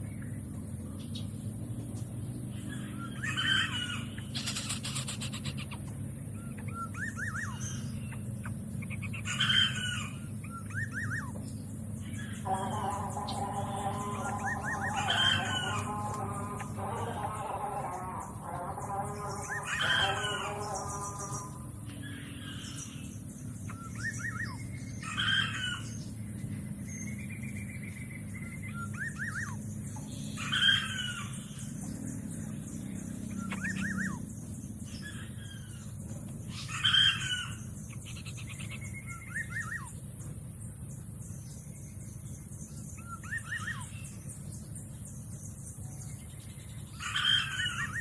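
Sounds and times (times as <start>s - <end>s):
harsh bird call: 2.5s - 11.4s, 12.0s - 23.0s, 30.3s - 31.7s
rooster crowing: 12.4s - 21.7s.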